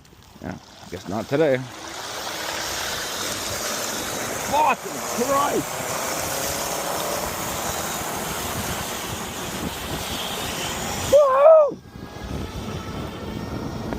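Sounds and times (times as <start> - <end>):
short voice-like cry: 11.1 - 11.8.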